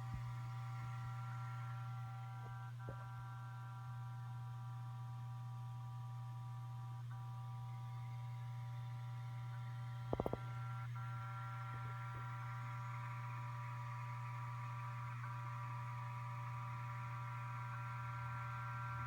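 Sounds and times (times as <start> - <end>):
hard drive humming: 6.8 - 19.0.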